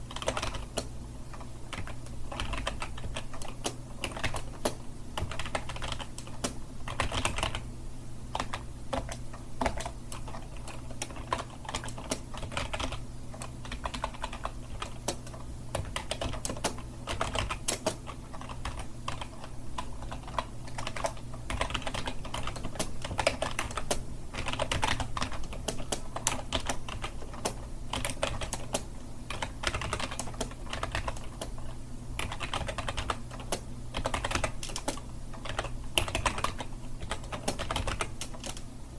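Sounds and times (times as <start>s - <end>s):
computer keyboard typing: 0.0s - 7.7s, 8.3s - 38.7s
low steady hum: 0.0s - 38.9s.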